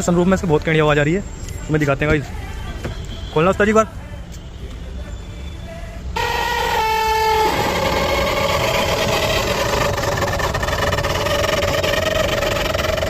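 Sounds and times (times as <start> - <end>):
sunroof motor whining: 6.2 - 13.0.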